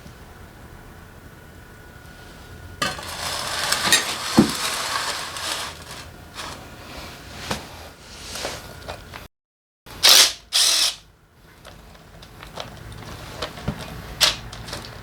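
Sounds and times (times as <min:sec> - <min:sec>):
metal tools scraped on workbench: 0:02.8 - 0:06.6.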